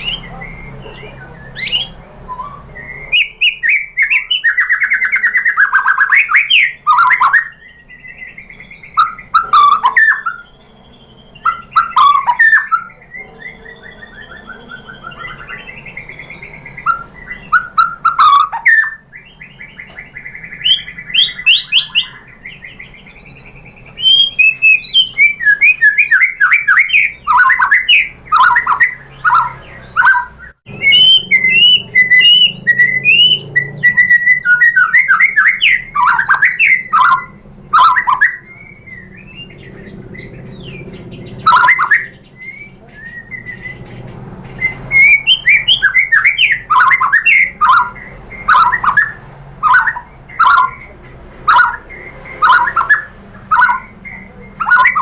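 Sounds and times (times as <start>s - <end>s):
bird singing whistled phrases: 0.0s - 50.9s, 51.5s - 55.0s.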